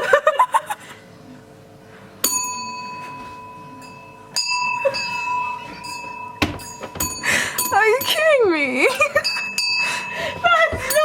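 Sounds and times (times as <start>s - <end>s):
service bell ringing: 2.2s - 11.0s.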